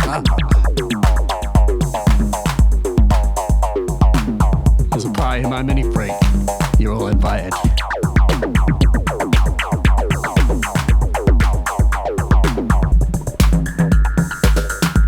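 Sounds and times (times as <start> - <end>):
kick drum pulse: 0.0 - 15.0.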